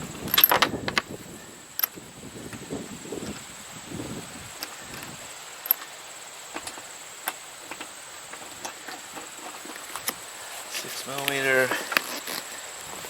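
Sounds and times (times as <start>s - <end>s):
hand tools and bolts clicking: 0.3s - 1.0s, 4.9s - 5.9s.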